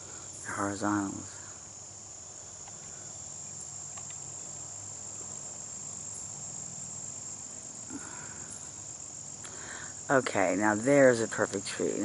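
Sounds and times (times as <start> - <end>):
insects trilling: 0.0 - 12.0
faint clicks: 3.9 - 4.2.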